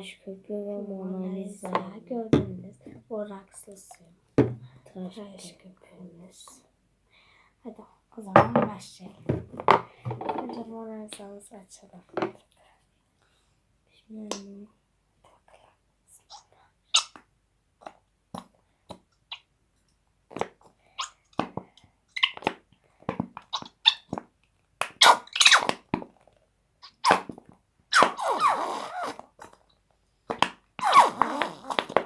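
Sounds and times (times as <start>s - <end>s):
plastic bottle squeezing and crinkling: 27.0s - 32.0s.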